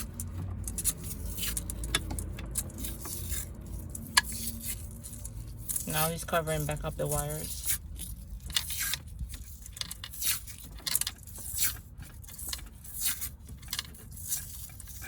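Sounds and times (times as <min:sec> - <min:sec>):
cloth tape scratchy rasps: 0:00.0 - 0:15.0.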